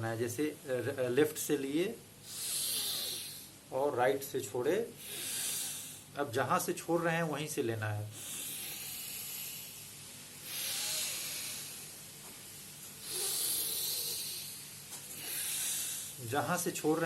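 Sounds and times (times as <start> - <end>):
breathing through the nose: 2.2 - 3.6, 5.0 - 6.1, 8.2 - 12.0, 13.0 - 16.2.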